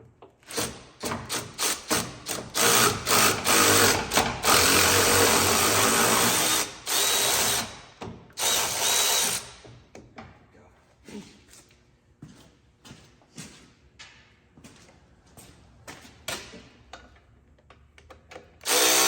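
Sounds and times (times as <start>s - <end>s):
cordless power tool spinning: 1.3s - 7.7s, 18.6s - 19.0s.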